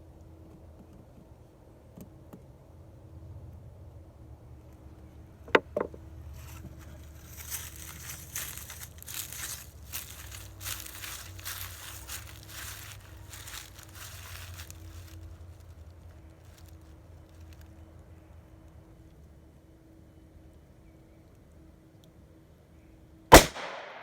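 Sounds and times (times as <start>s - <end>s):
crunching and rustling: 6.3s - 17.8s
handgun shot: 23.3s - 24.0s.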